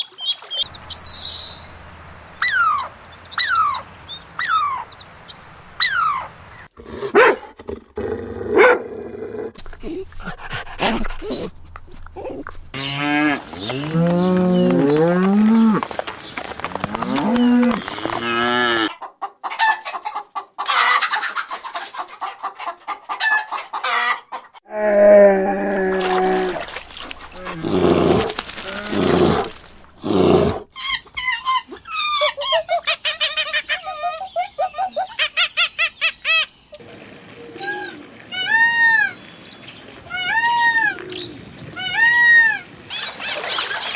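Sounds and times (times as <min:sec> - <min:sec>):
hens clucking: 0:18.8 - 0:24.6.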